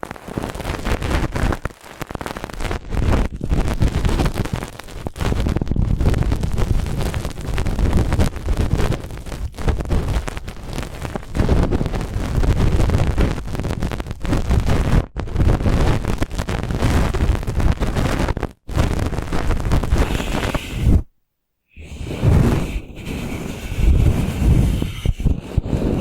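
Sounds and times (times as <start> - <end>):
brush bristles rubbing microphone: 19.7 - 21.1, 21.8 - 26.0.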